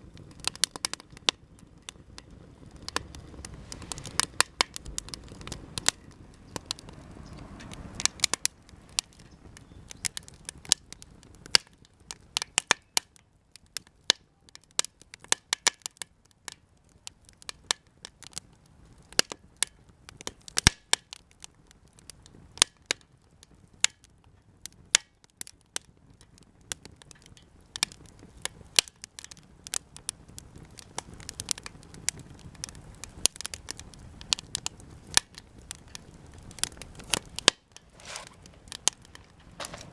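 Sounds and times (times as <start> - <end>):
low rush of flame: 0.0 - 12.7, 26.6 - 39.9
campfire crackling and popping: 0.0 - 39.9.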